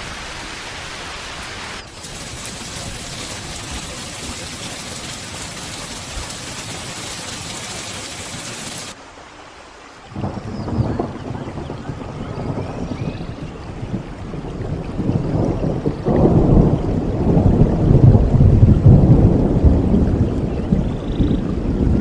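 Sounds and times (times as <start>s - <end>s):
steady rain falling: 0.0s - 9.0s.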